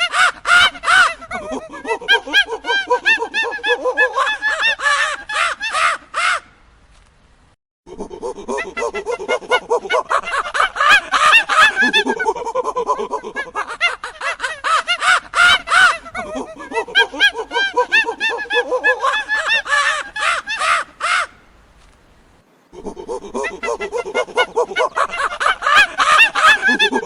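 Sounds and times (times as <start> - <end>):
chattering animal calls: 15.4 - 21.3, 22.7 - 27.0.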